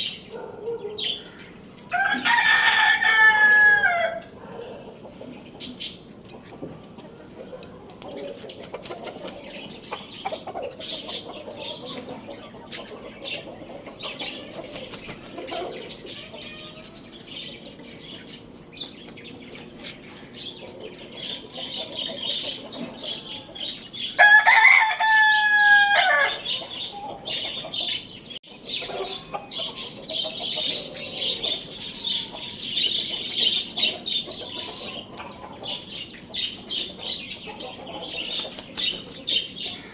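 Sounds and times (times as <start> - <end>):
rooster crowing: 1.9 - 4.3, 24.2 - 26.6.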